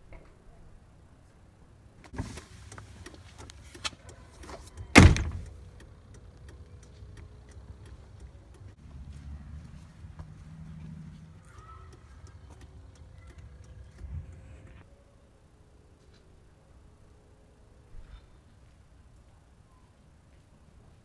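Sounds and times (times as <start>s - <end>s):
handling noises: 2.0s - 5.7s
faint ticking: 2.6s - 8.9s, 10.0s - 14.8s
loud thud: 5.0s - 5.4s.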